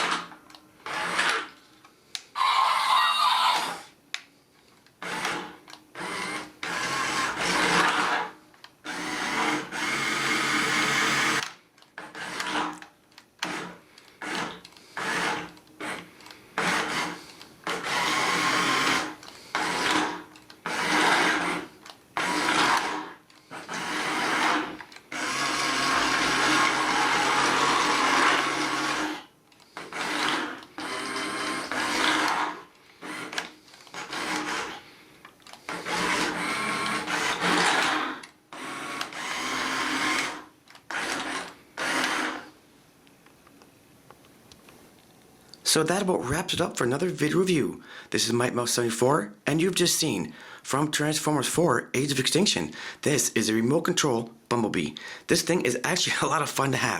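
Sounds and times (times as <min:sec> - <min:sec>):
toy car motor whirring: 0:00.0 - 0:01.6, 0:02.4 - 0:04.0, 0:05.0 - 0:42.6.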